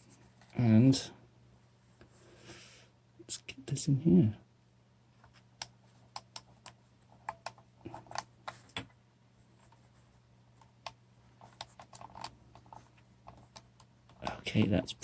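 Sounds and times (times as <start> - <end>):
plastic clicks and scrapes: 10.6 - 14.7.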